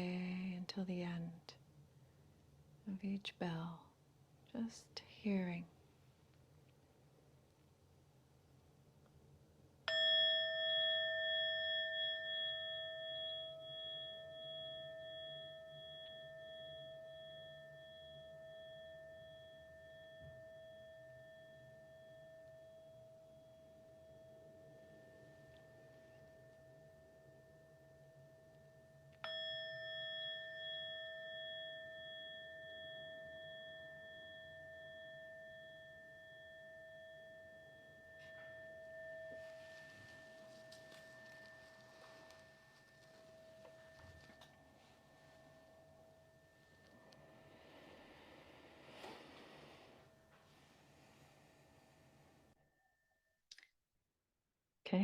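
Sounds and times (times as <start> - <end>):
meditation bell ringing: 9.9 - 53.2.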